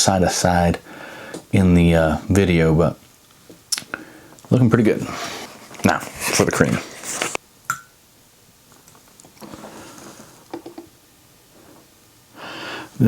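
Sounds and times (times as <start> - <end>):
soft handling sounds: 4.4 - 7.4.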